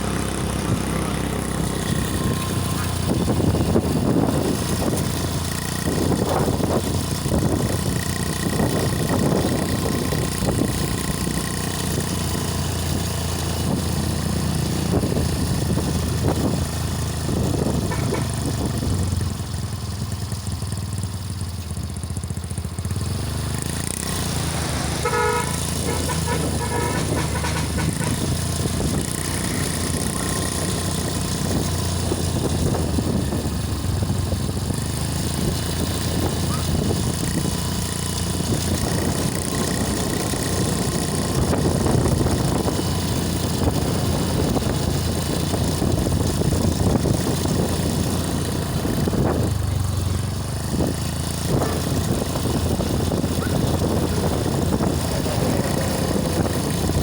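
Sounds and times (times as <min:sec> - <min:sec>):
motorcycles passing: 0:00.0 - 0:19.5, 0:20.1 - 0:57.0
road traffic: 0:00.0 - 0:57.0
vehicle horn short toots: 0:17.8 - 0:18.5, 0:24.9 - 0:28.5
wind rumbling: 0:50.7 - 0:57.0.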